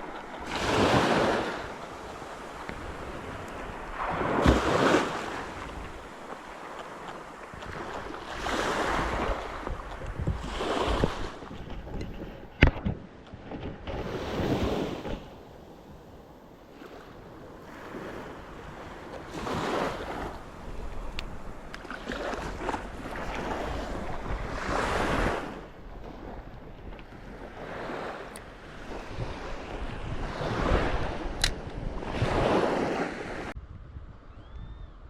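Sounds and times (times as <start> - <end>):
sea waves washing in: 0.0 - 11.8, 14.0 - 33.6
wind on microphone: 0.0 - 35.0
sharp click: 31.4 - 31.8.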